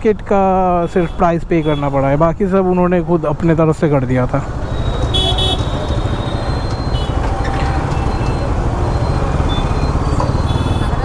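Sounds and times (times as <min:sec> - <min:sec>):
road and traffic noise: 0:00.0 - 0:11.0
motorcycle engine: 0:04.4 - 0:11.0.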